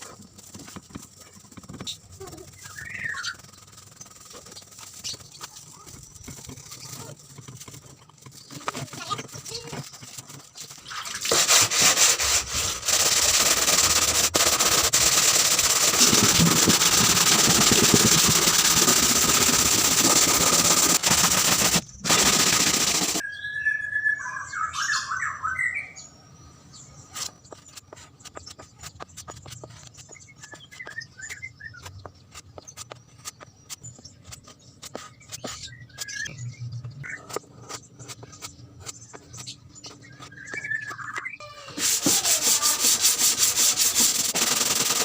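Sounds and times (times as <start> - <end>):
bird chirps: 1.6 - 7.4, 23.2 - 41.8.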